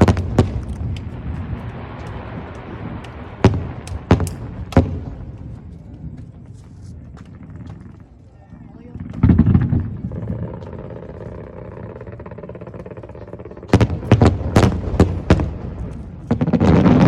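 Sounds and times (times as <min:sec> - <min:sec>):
firework sharp cracks: 0:00.0 - 0:05.6, 0:09.0 - 0:17.0
firework dense crackling: 0:00.0 - 0:17.0
firework rumble: 0:00.0 - 0:17.0.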